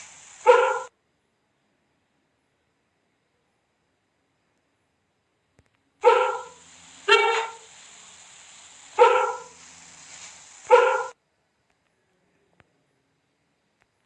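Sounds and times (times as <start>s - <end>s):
sharp barking calls: 0.0s - 1.0s, 6.0s - 7.9s, 8.8s - 11.2s
faint steady hiss: 0.0s - 14.0s.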